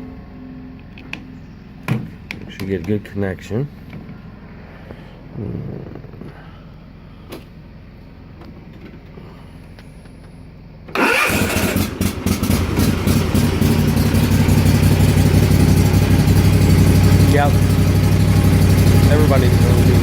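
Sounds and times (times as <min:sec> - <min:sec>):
mower engine starting and running: 0:10.9 - 0:20.0.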